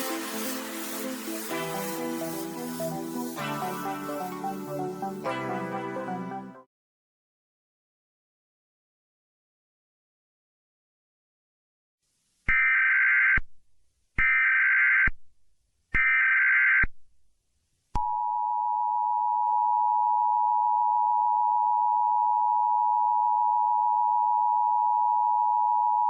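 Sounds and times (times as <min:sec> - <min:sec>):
buzzy digital data tone: 0:00.0 - 0:03.4.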